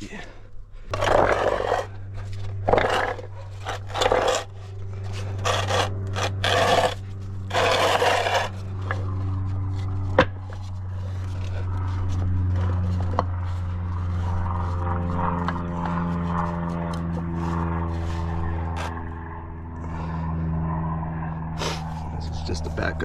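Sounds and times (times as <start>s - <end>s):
steady low hum: 0.0s - 23.0s
hydraulic jack scraping strokes: 0.9s - 9.8s.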